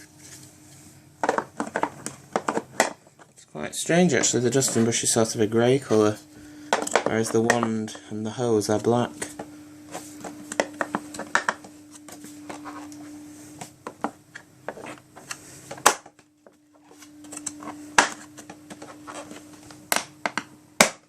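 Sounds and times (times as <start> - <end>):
faint steady hum: 0.0 - 21.0
plastic parts clicking and knocking: 1.2 - 3.4.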